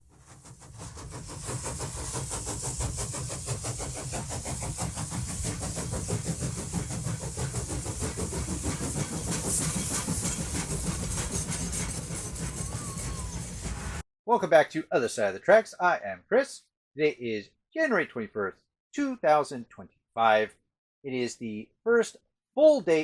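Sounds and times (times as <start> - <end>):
hiss: 0.0 - 14.0
train rumble: 0.0 - 14.0
train wheels clicking: 0.0 - 14.0.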